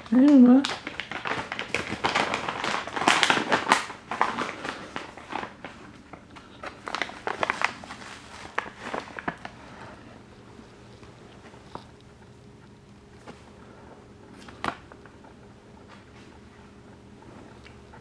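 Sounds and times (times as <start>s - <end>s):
bag crinkling: 0.0s - 11.9s.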